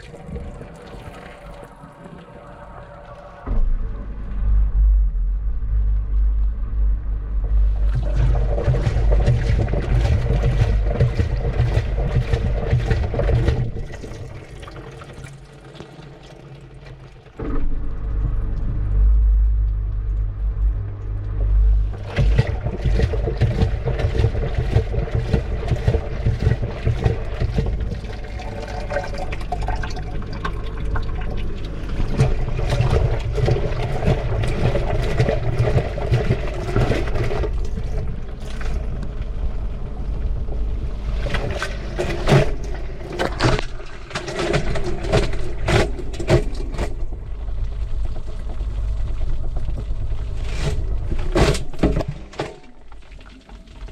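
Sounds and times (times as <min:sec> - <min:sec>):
water sloshing in washing machine: 0:00.0 - 0:02.4, 0:07.5 - 0:17.7, 0:21.3 - 0:39.5, 0:41.0 - 0:48.6, 0:49.2 - 0:53.9
low rumble: 0:00.0 - 0:53.9.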